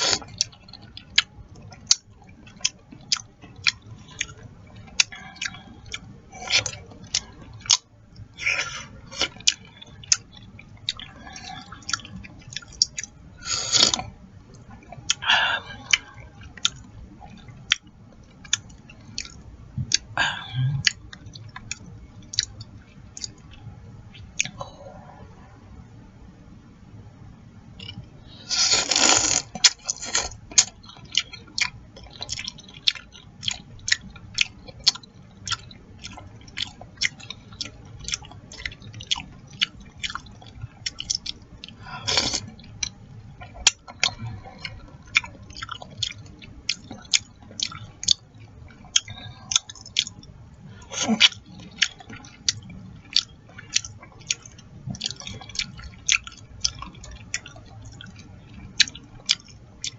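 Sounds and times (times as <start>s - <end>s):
wet chewing: 0.0s - 24.8s, 27.8s - 59.9s
slurping soup: 28.4s - 30.4s.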